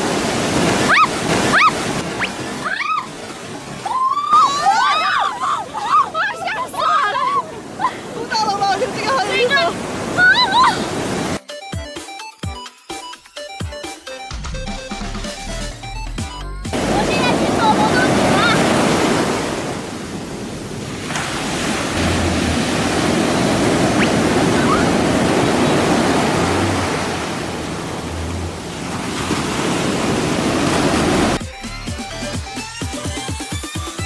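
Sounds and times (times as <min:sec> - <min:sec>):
sea waves washing: 0:00.0 - 0:11.4, 0:16.7 - 0:33.6
music: 0:11.4 - 0:18.1, 0:31.4 - 0:34.0.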